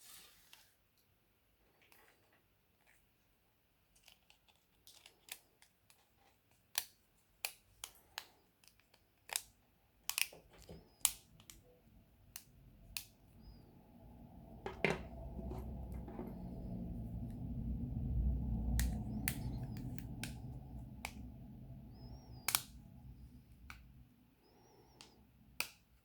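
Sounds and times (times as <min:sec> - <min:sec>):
small tools and parts clicking: 0:03.9 - 0:11.6
low hum: 0:12.7 - 0:24.9.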